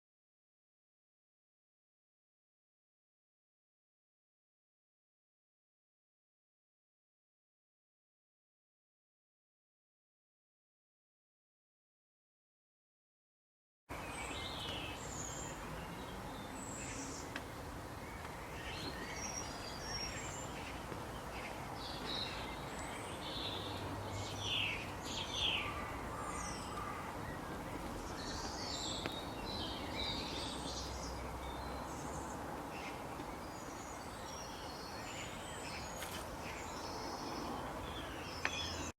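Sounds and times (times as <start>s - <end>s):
birds chirping: 13.9s - 38.9s
steady background hiss: 13.9s - 38.9s.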